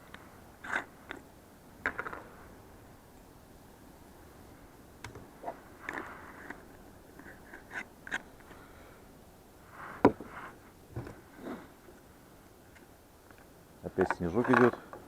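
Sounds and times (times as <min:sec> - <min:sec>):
handling clicks and knocks: 0:12.7 - 0:15.0.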